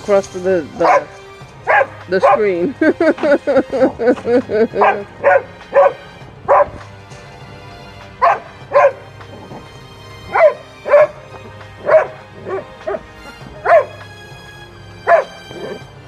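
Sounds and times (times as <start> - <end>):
dog barking: 0.8 - 2.5, 4.8 - 6.9, 8.2 - 9.0, 10.3 - 14.0, 15.1 - 15.8.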